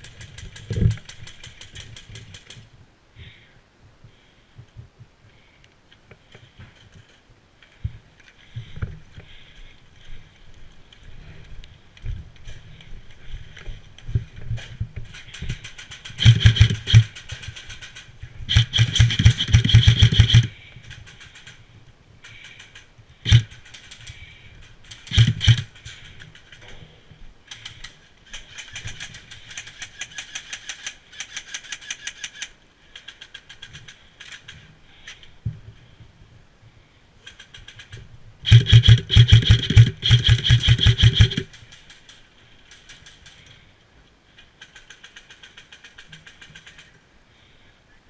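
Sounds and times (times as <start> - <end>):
airsoft guns firing bursts: 15.4 - 21.5, 23.3 - 23.8, 25.0 - 25.8, 37.4 - 41.8.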